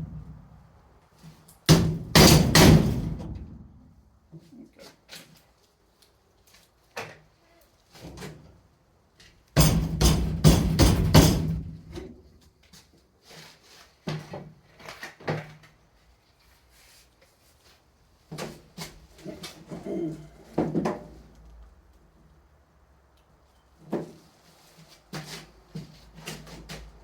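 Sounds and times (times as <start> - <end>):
metal knocks and clatter: 1.8 - 3.6, 9.6 - 12.1.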